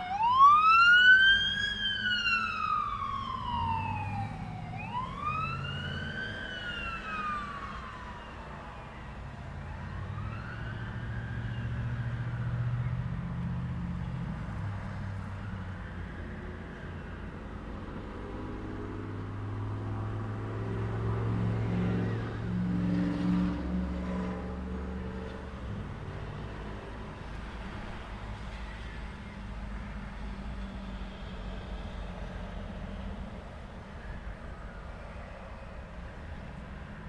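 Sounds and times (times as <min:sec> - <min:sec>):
traffic hum: 0:00.0 - 0:37.0.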